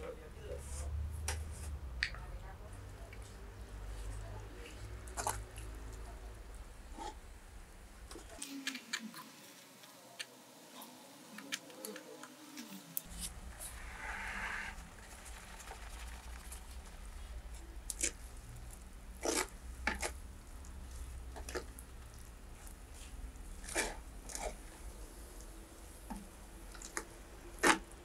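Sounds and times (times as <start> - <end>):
rustling: 8.1 - 25.5
steady low hum: 13.0 - 27.5.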